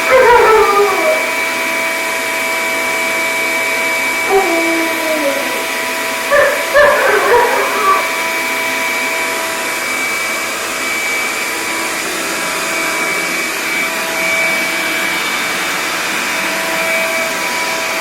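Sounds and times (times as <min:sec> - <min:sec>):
dog yelping: 0:00.0 - 0:01.4, 0:04.2 - 0:08.2
shop vacuum running: 0:00.0 - 0:18.0.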